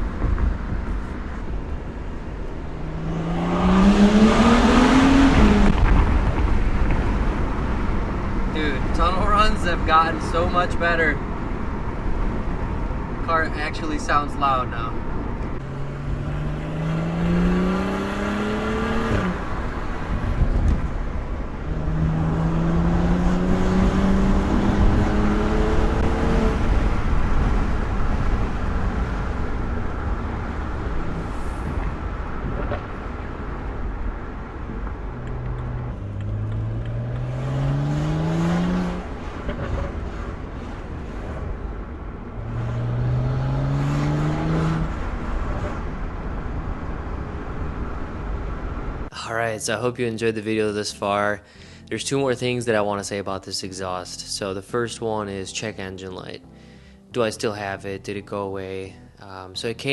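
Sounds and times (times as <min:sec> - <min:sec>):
car engine accelerating: 0:00.0 - 0:10.4, 0:14.7 - 0:49.1
road and exhaust drone: 0:00.0 - 0:57.3.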